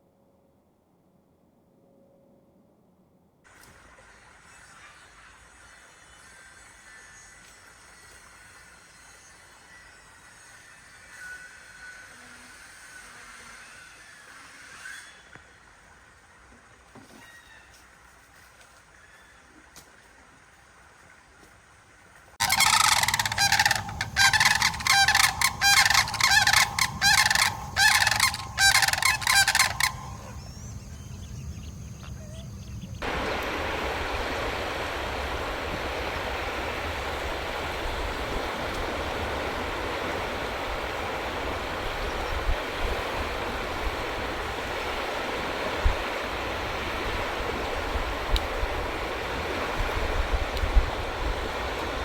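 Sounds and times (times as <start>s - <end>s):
bird calling in pulsing series: 22.4s - 33.0s.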